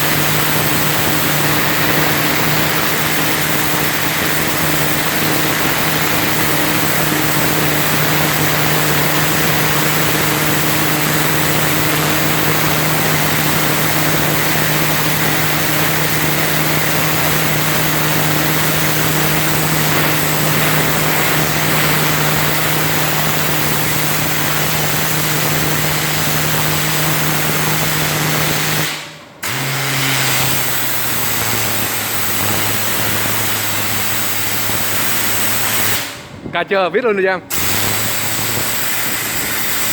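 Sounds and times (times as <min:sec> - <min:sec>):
water jet hissing: 0:00.0 - 0:36.1, 0:37.5 - 0:39.9
motor and pump hum: 0:00.0 - 0:36.4, 0:37.5 - 0:39.9.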